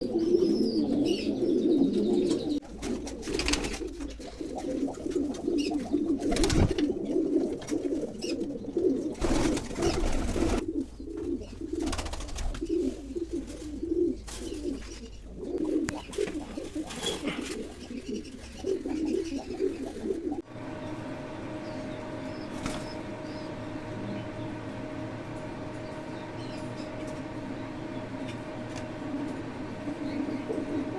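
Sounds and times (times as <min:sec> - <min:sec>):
pigeons cooing: 0:00.0 - 0:30.9
steady hum: 0:02.4 - 0:17.8, 0:19.4 - 0:30.9.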